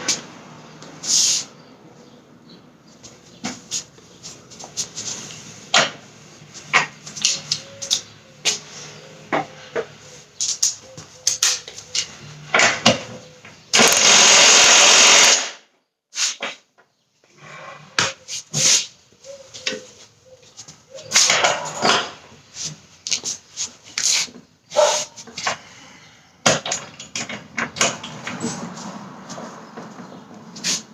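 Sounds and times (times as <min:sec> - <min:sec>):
impact wrench burst: 0:13.8 - 0:15.6
tools clanking on metal: 0:21.1 - 0:22.3.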